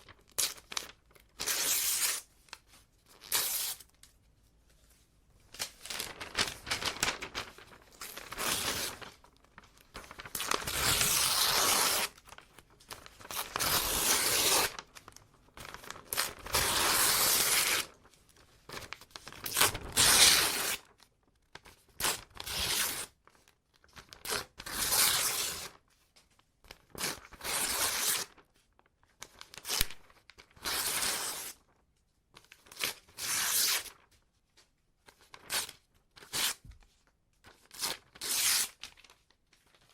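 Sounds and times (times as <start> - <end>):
paper crinkling: 2.4 - 20.7
paper ripping: 5.6 - 12.4, 13.0 - 14.9, 15.6 - 18.0.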